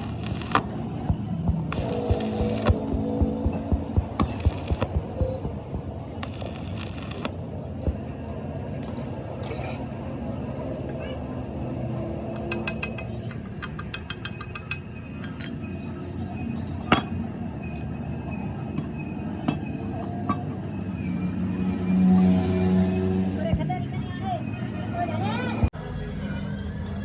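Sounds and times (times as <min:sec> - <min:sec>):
steady low hum: 0:00.0 - 0:08.7.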